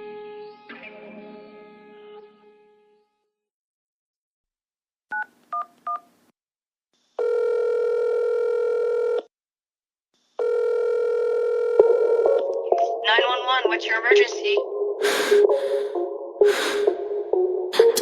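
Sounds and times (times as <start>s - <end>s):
telephone ringing tone: 7.2s - 9.3s, 10.4s - 12.6s.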